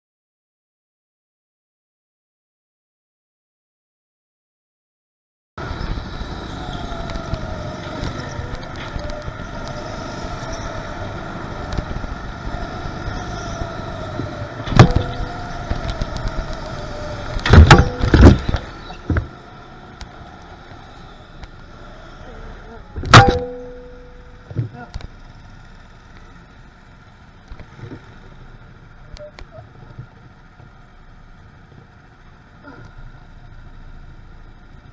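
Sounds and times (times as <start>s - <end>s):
go-kart engine running: 5.6s - 34.9s
loud sharp knocks: 17.4s - 19.3s, 23.0s - 23.9s.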